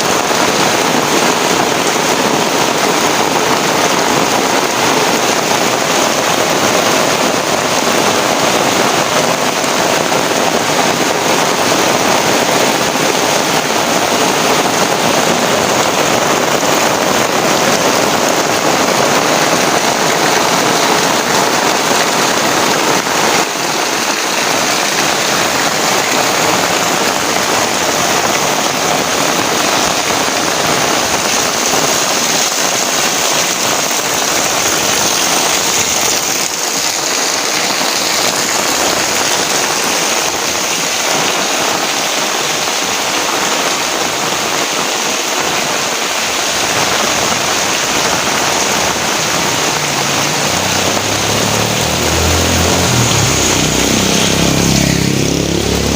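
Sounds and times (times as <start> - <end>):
heavy rain falling: 0.0 - 55.9.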